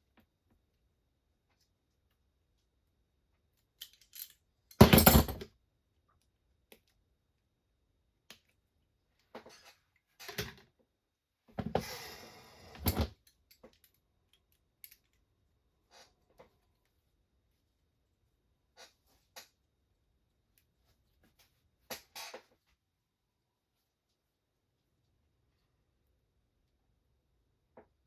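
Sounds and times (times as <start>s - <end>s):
small parts clattering on work surface: 3.8s - 5.5s.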